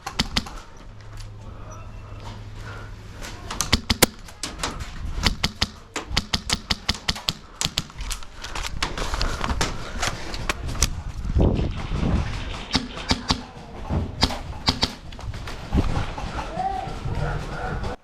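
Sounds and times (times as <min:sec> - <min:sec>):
airsoft guns firing: 0:00.0 - 0:00.7, 0:03.6 - 0:04.5, 0:05.2 - 0:08.1, 0:11.8 - 0:15.1.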